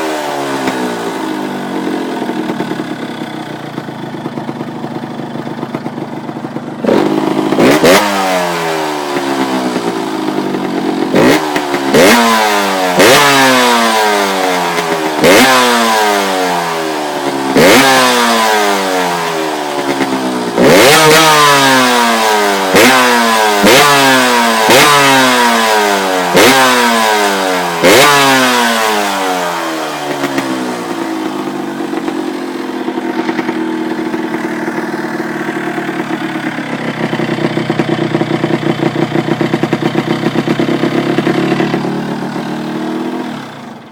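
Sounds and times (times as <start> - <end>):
two-stroke motorcycle engine revving: 0.0 - 43.9
engine idling: 0.5 - 12.1, 29.6 - 43.9.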